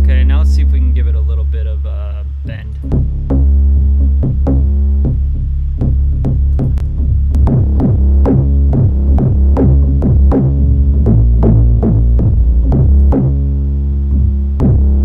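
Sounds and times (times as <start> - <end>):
synthesized bass notes: 0.0 - 15.0
drum machine hits: 2.4 - 3.6, 5.8 - 13.4.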